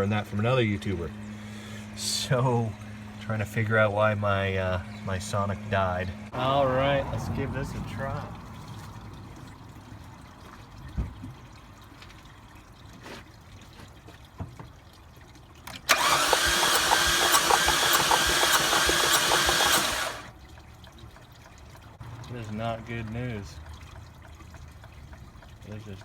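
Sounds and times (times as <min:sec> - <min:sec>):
starter cranking engine: 0:15.7 - 0:20.3.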